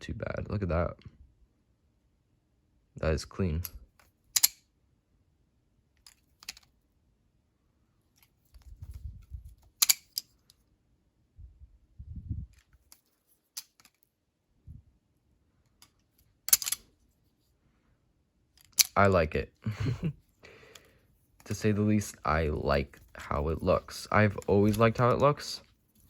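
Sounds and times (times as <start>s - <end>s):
balisong handles clicking: 15.8s - 16.8s, 23.0s - 26.0s.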